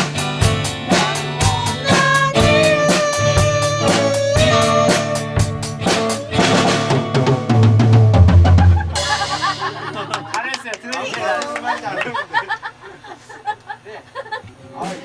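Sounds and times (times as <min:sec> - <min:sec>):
drum kit beat: 0:00.0 - 0:10.5
lead instrument melody: 0:02.4 - 0:07.1.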